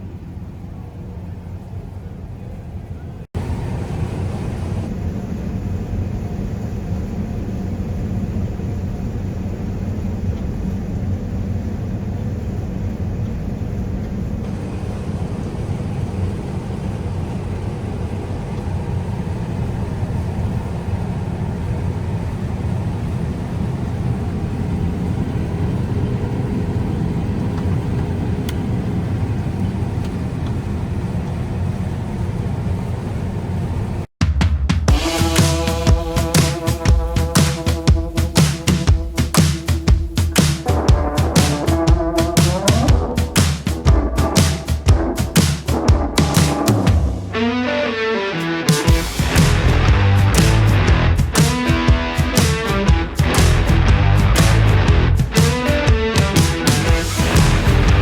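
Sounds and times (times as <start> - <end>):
combine harvester droning: 3.4 - 26.1, 34.9 - 58.0.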